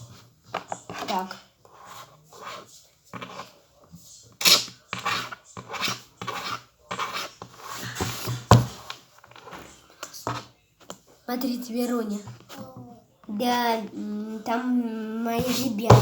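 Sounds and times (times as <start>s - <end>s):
rubbing and rustling handling noise: 15.2s - 16.0s.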